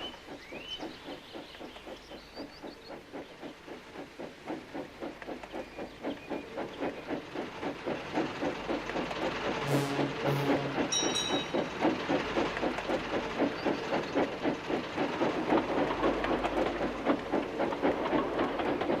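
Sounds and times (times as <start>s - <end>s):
steam locomotive chuffing: 0.0s - 19.0s
brief high tone: 9.6s - 11.6s.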